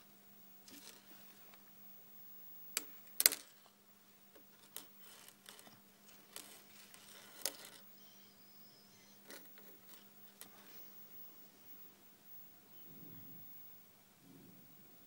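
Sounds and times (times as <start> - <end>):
soft rustling: 0.6 - 1.7, 4.5 - 8.0, 9.2 - 11.9.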